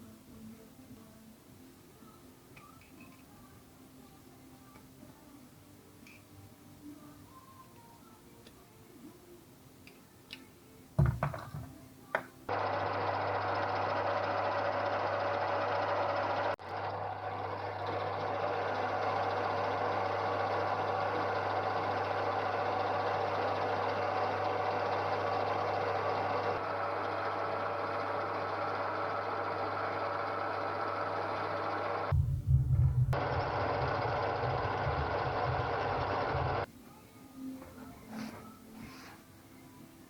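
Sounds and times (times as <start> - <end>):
electric machine tool humming: 12.5 - 36.7.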